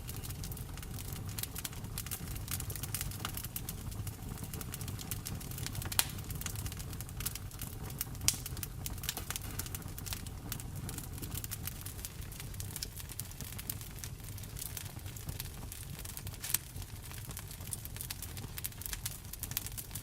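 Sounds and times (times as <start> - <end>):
fire snaps: 0.0 - 20.0
wood fire crackling: 0.0 - 20.0.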